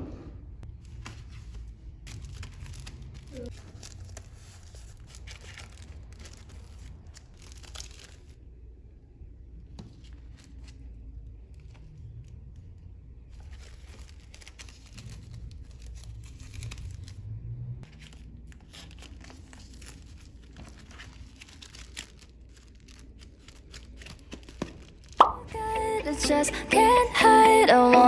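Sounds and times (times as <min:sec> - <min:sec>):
packaging crinkling and tearing: 0:02.0 - 0:08.4, 0:13.4 - 0:17.2, 0:17.9 - 0:25.2.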